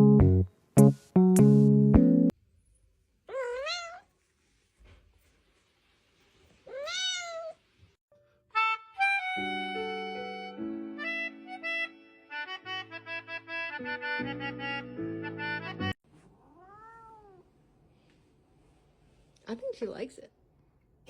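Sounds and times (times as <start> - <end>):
cat meowing: 3.3 - 4.1, 6.6 - 7.6, 16.4 - 17.5
music with held notes: 8.2 - 16.0.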